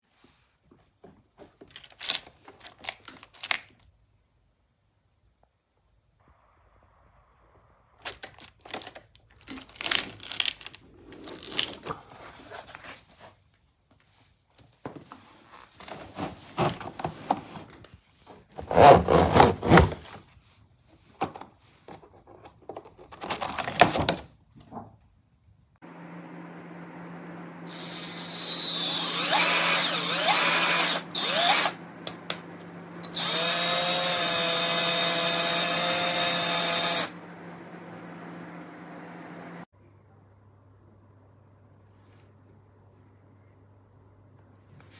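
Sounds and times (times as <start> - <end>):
cordless drill motor whirring: 25.8 - 39.6.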